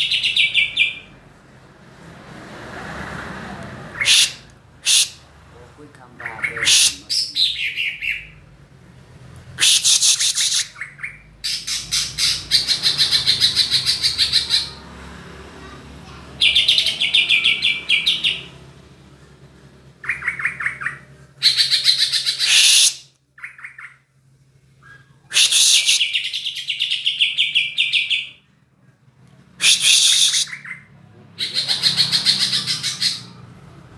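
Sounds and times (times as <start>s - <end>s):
songbird chattering trills: 6.1s - 8.2s.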